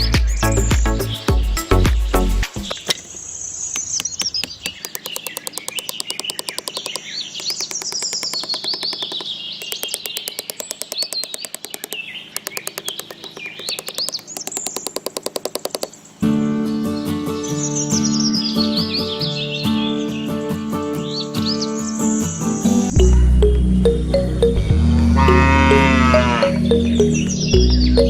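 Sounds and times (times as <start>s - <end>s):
birds chirping: 0.0s - 28.0s
rapid even ticking: 3.8s - 16.2s, 22.9s - 28.0s.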